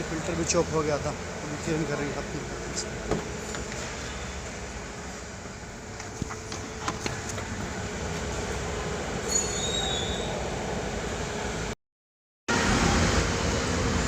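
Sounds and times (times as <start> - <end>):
brief high squeal: 9.2 - 10.4
mechanical running hum: 12.5 - 14.0.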